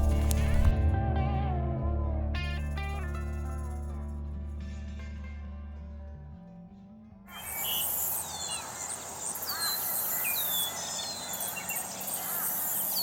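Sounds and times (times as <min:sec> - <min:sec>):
downward-sliding bird whistles: 0:07.3 - 0:11.8
arched bird chirps: 0:07.3 - 0:13.0
high-pitched insect buzz: 0:07.3 - 0:13.0.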